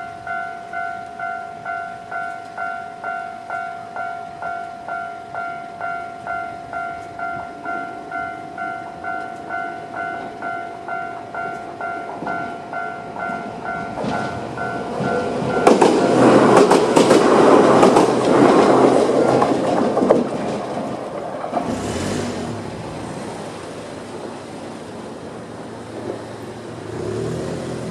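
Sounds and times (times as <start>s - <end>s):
level crossing alarm bell: 0.0s - 19.8s
electric train passing: 0.0s - 27.9s
wheel clicks over rail joints: 13.2s - 22.7s.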